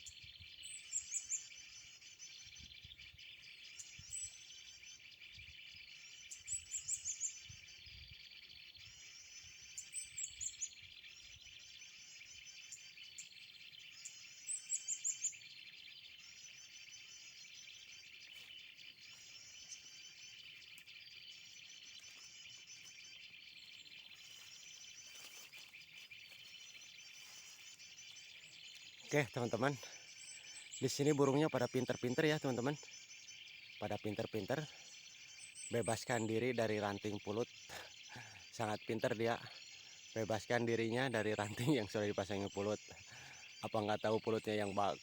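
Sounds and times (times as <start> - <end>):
crickets and insects droning: 0.0 - 45.0
high-pitched bird calls: 0.0 - 45.0.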